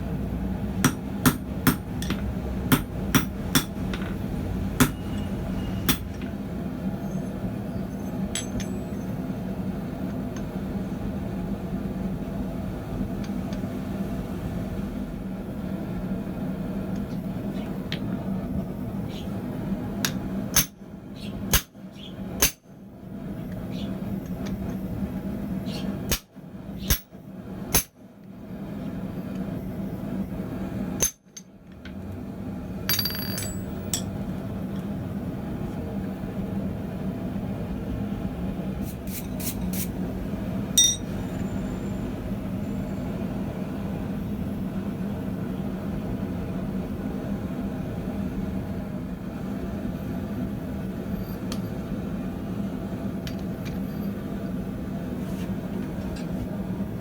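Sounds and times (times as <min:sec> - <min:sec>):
steady low hum: 0:00.0 - 0:57.0
metallic clinks of steel tools: 0:40.8 - 0:41.1.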